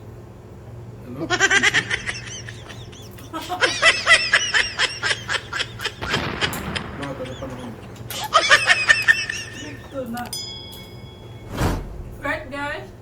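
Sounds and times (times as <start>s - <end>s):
loud human laughter: 1.1s - 10.2s.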